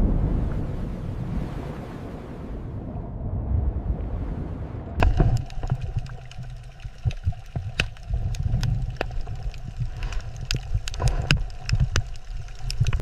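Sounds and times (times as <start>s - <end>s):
underwater low rumble: 0.0s - 13.0s
bubbling pops and clicks: 5.0s - 13.0s.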